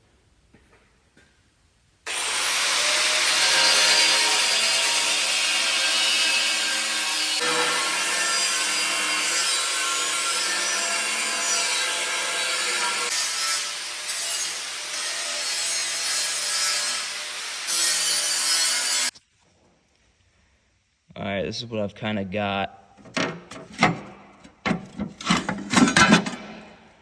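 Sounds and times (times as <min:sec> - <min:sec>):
power tool cutting sheet steel: 0:02.1 - 0:19.1.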